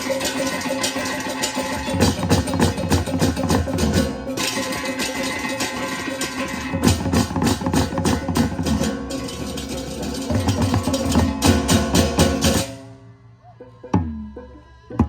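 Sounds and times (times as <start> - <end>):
metal percussion strokes: 0.0 - 13.3.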